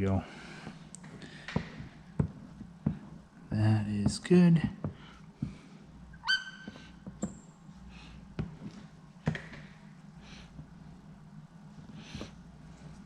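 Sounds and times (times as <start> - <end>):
short rising squeak: 6.2 - 6.9.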